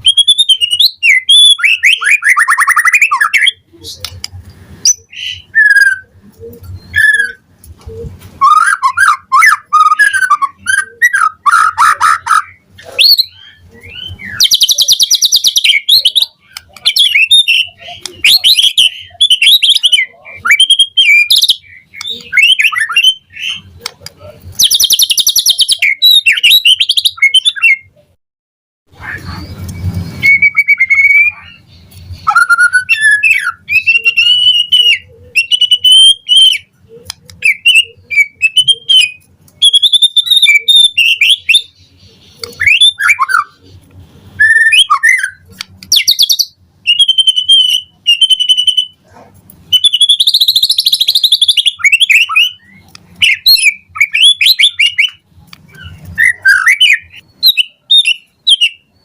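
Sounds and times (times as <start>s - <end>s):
bird singing whistled song: 0.0s - 4.0s, 4.8s - 7.4s, 8.4s - 23.7s, 24.6s - 27.9s, 29.2s - 36.7s, 37.4s - 43.6s, 44.4s - 49.0s, 49.7s - 59.0s
harsh buzzy bird phrase: 8.4s - 28.0s, 28.9s - 39.1s.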